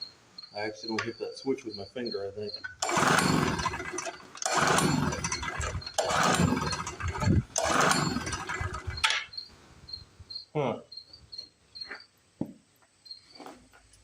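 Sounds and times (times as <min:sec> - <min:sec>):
crickets chirping: 0:00.0 - 0:14.0
recoil starter pulls: 0:02.4 - 0:09.4
engine turning over: 0:02.5 - 0:09.3.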